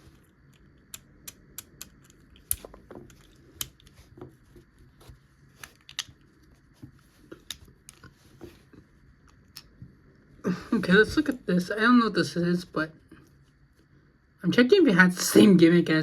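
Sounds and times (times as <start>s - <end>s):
plastic toy parts clicking: 0.5s - 4.0s, 5.6s - 6.2s.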